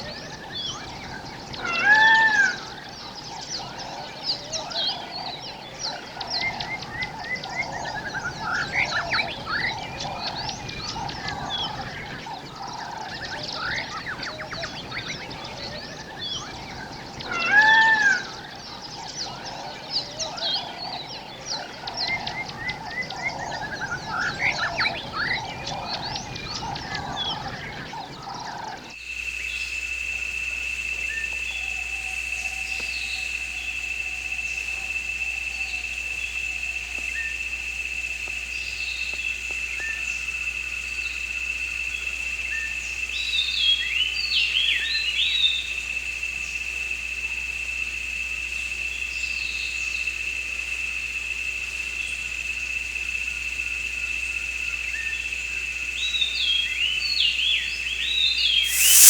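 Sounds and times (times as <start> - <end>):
high-pitched whine: 58.6 - 59.0
loud arched animal call: 58.6 - 59.0.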